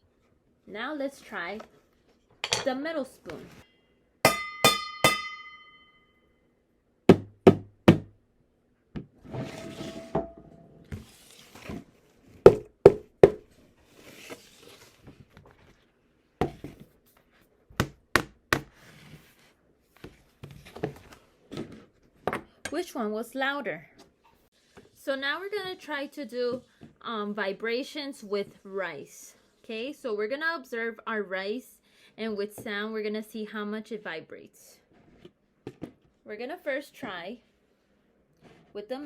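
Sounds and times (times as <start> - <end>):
spoon ringing metal pot: 4.3 - 6.2.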